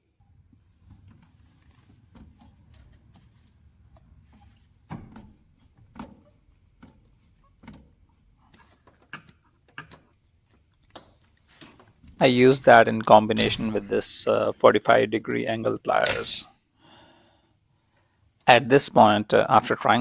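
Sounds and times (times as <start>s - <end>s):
pliers clicking on metal clamp: 13.3s - 14.0s, 16.0s - 16.4s.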